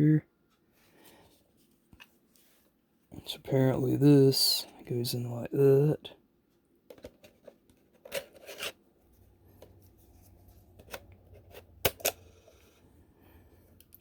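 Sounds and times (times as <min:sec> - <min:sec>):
plastic clicks and scrapes: 0:06.9 - 0:08.8.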